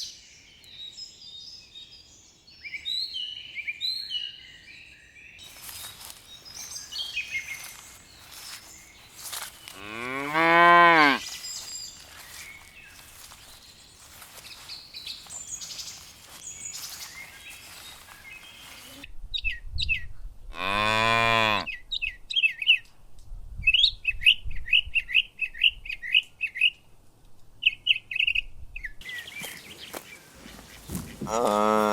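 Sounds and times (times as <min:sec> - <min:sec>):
small birds chirping: 0:05.3 - 0:19.1, 0:27.6 - 0:31.8
cow mooing: 0:09.8 - 0:11.2, 0:20.6 - 0:21.7, 0:31.3 - 0:31.9.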